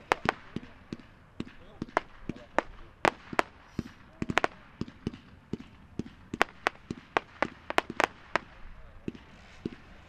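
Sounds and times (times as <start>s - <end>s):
fireworks cake sharp bangs: 0.0s - 10.0s.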